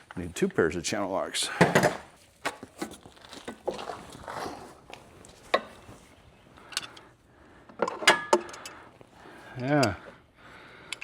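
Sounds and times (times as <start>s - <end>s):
hand tools clicking and knocking: 9.5s - 10.1s.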